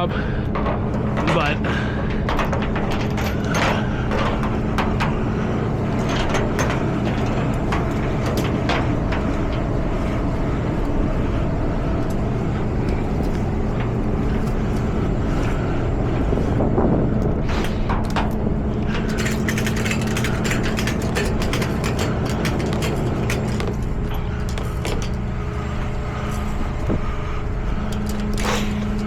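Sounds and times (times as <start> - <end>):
straps and hooks clicking: 19.0 - 25.3.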